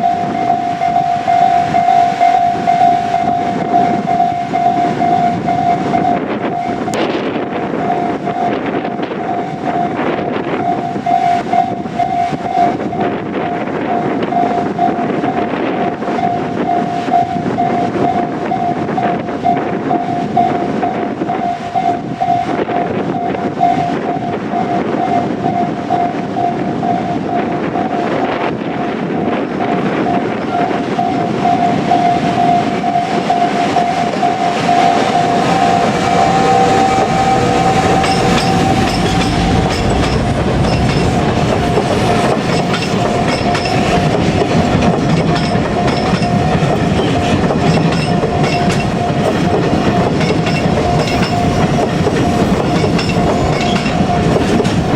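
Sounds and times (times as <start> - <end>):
crossing warning bell ringing: 0.0 - 54.9
train wagons clattering over rail joints: 35.5 - 54.9.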